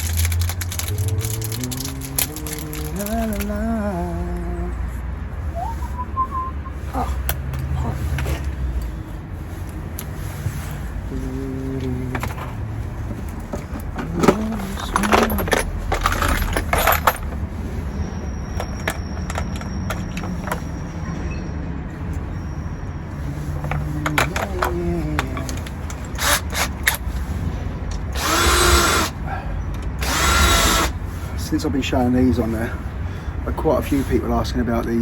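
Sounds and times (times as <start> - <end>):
tools clicking and knocking: 13.1 - 17.4, 18.6 - 20.7, 23.6 - 27.0
power drill whining: 25.4 - 26.9, 28.1 - 29.2, 30.0 - 31.0.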